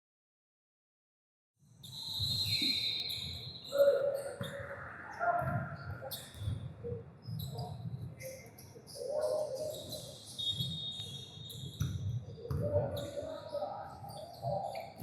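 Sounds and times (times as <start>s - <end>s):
high chirping squeaks: 7.3s - 12.0s.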